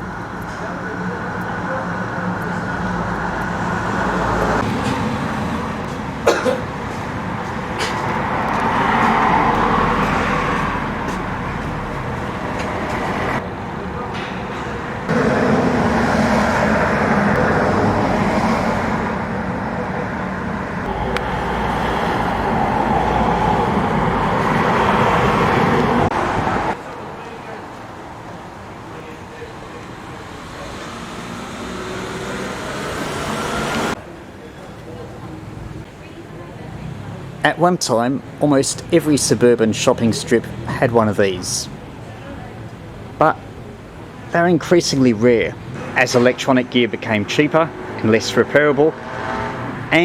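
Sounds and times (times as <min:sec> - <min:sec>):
cars passing: 0:00.0 - 0:50.0
traffic rumble: 0:00.0 - 0:50.0.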